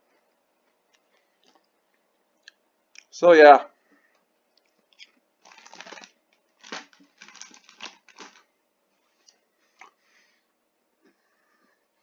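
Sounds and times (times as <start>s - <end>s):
crispy snack crinkling and crunching: 4.6s - 8.5s.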